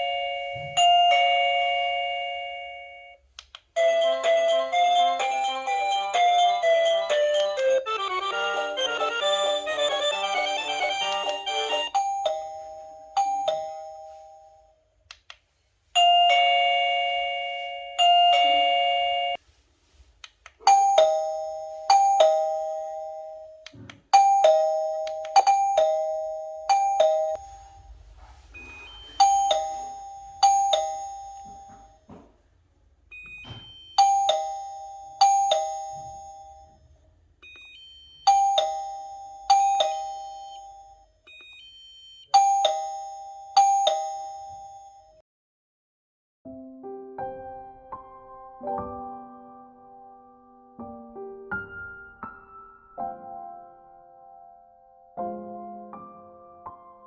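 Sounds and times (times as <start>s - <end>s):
doorbell ding-dong chime: 0.0s - 3.2s, 3.8s - 14.8s, 16.0s - 19.4s, 20.6s - 32.3s, 33.1s - 45.2s.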